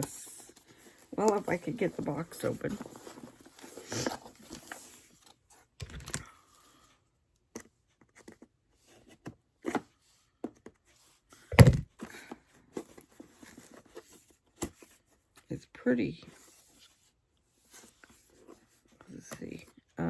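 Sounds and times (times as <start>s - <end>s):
heavy thump: 11.5s - 11.8s.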